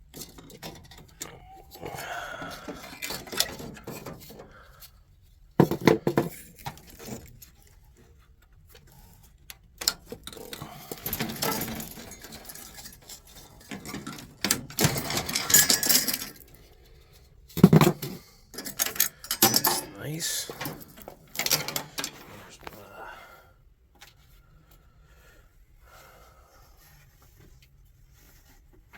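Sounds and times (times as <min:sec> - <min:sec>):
metal parts clinking and clattering: 0:02.6 - 0:04.4, 0:09.8 - 0:16.6, 0:17.6 - 0:22.3.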